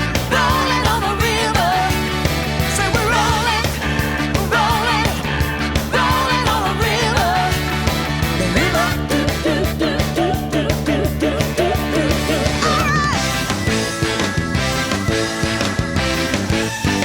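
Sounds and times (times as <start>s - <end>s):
bass: 0.0s - 17.0s
drums: 0.0s - 17.0s
guitar: 0.0s - 17.0s
person singing: 8.4s - 13.5s.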